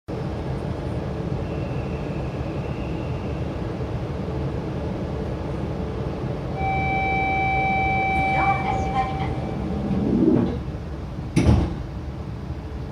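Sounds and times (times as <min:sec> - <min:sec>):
train interior rumble: 0:00.1 - 0:12.9
high inverter whine: 0:06.6 - 0:10.8.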